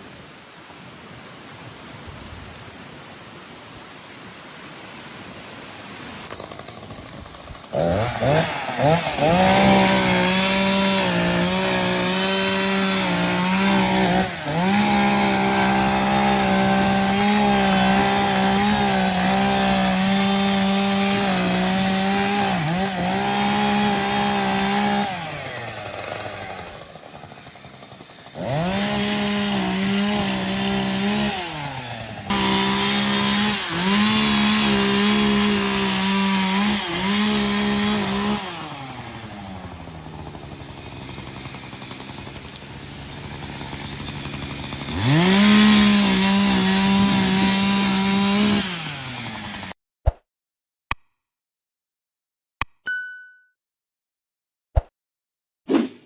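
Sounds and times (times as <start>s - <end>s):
chainsaw engine revving: 6.2s - 49.8s.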